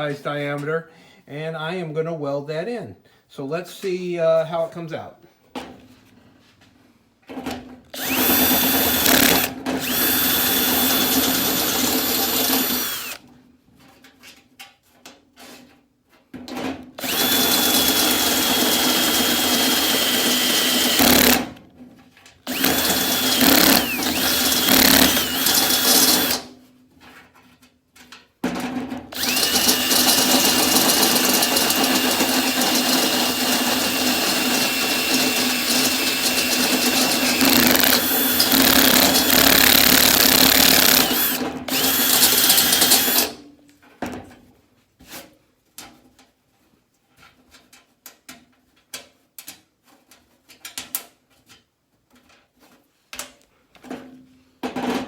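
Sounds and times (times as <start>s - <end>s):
drill cutting sheet steel: 8.0s - 13.2s, 17.0s - 21.5s, 22.5s - 26.5s, 29.2s - 43.4s.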